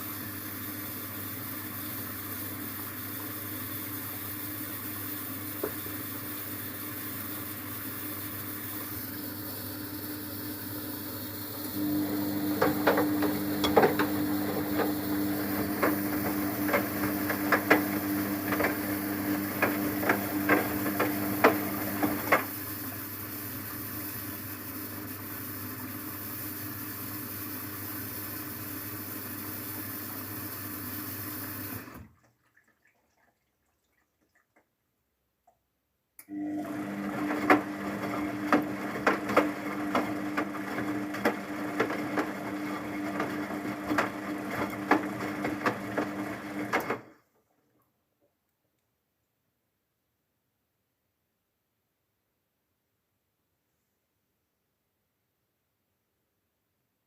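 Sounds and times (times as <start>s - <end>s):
washing machine motor hum: 0.0s - 33.5s, 36.2s - 47.2s.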